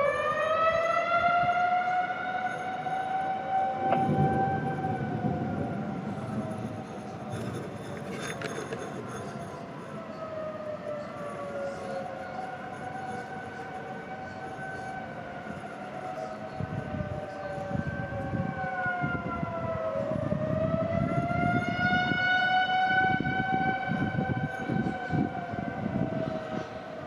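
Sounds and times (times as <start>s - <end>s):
tornado sirens wailing: 0.0s - 27.0s
low rumbling noise: 3.6s - 10.3s.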